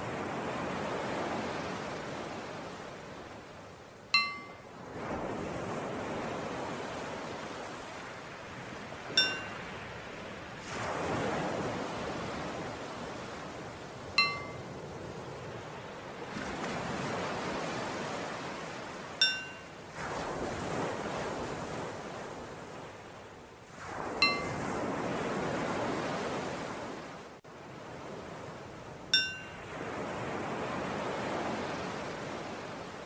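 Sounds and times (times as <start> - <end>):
ocean waves washing in: 0.0 - 33.0
bell ringing: 4.2 - 4.6, 9.2 - 9.6, 14.2 - 14.6, 19.2 - 19.6, 24.2 - 24.5, 29.2 - 29.6.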